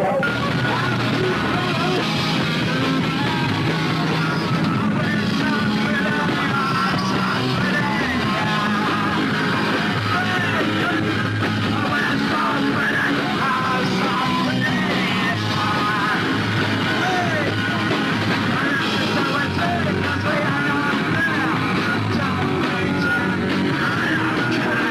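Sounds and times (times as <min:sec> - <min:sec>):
punk rock band playing: 0:00.0 - 0:24.9.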